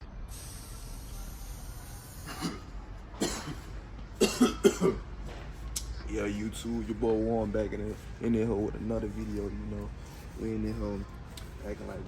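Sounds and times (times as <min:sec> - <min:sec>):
person coughing: 0:02.3 - 0:05.0.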